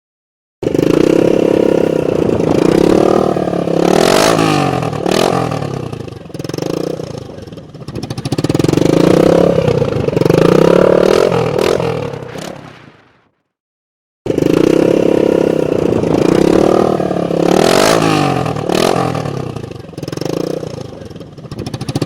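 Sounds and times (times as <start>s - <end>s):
motorcycle engine revving: 0.6s - 13.0s, 14.3s - 22.0s
exhaust cracks: 0.6s - 13.4s.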